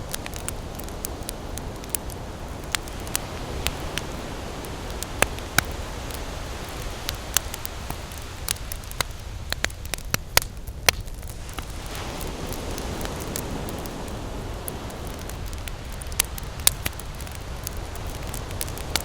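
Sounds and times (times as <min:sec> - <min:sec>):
fire crackling and popping: 0:00.0 - 0:19.0
low rush of flame: 0:00.0 - 0:19.0.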